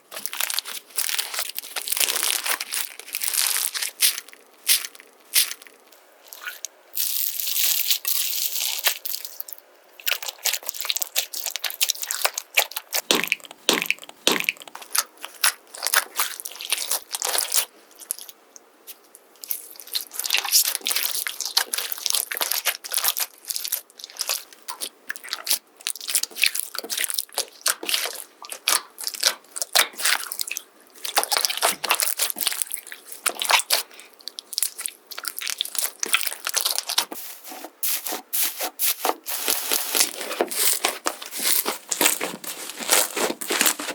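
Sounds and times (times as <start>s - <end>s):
slime crackling and popping: 0.2s - 5.8s, 6.4s - 43.9s.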